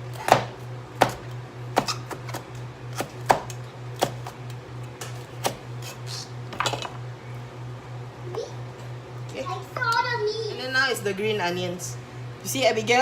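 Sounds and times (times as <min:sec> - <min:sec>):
steady low hum: 0:00.0 - 0:13.0
knife chopping on cutting board: 0:00.1 - 0:04.4, 0:05.0 - 0:06.0.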